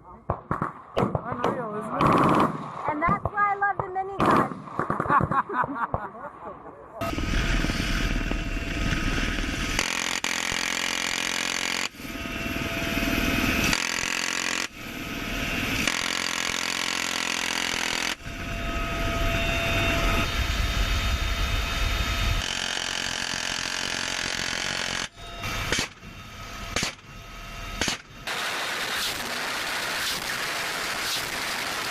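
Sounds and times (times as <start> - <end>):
minigun firing: 0.3 - 5.7, 7.0 - 12.1, 22.3 - 31.9.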